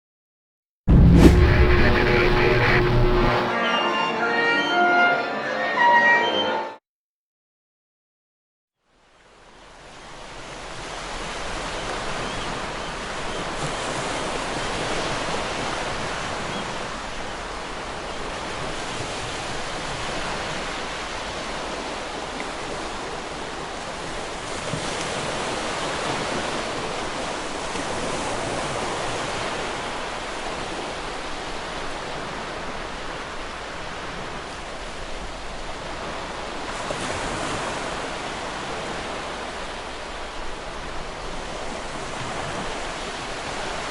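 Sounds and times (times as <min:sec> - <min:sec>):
ocean waves breaking on shore: 0:09.7 - 0:43.9.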